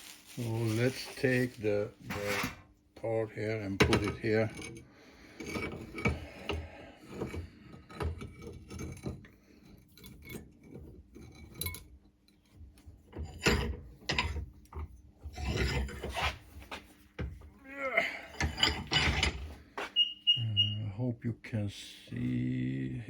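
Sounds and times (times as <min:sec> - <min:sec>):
metal parts scraping and rubbing: 0:00.0 - 0:02.6, 0:15.2 - 0:16.6, 0:18.3 - 0:20.2
metal knocks and clinks: 0:18.3 - 0:19.5.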